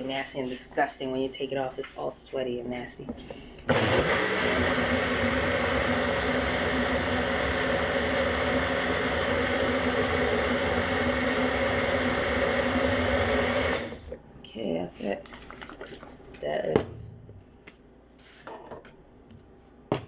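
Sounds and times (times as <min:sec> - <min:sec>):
blender motor running: 0:03.7 - 0:14.2.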